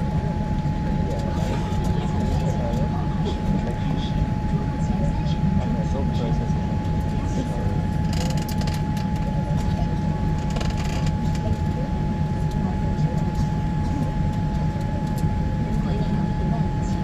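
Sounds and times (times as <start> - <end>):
constant whine: 0.0 - 17.0
vehicle interior rumble: 0.0 - 17.0
rattles and clicks: 8.0 - 9.8.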